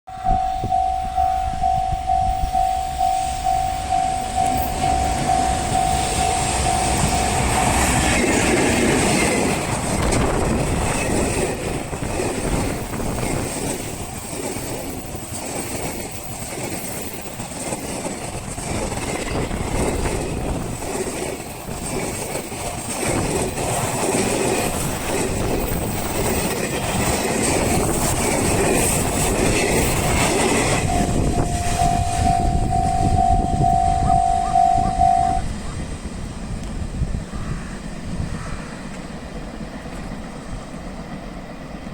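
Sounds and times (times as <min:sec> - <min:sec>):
level-crossing warning bell: 0:00.1 - 0:10.0, 0:13.9 - 0:36.0
train wheel-on-rail noise: 0:00.1 - 0:41.9.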